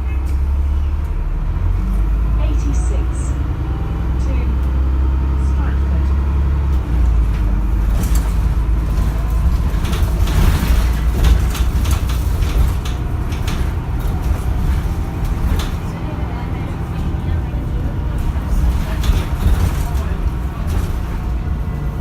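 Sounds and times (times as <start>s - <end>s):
bus engine and road rumble: 0.0s - 22.0s
bodywork rattling clicks: 7.9s - 16.0s.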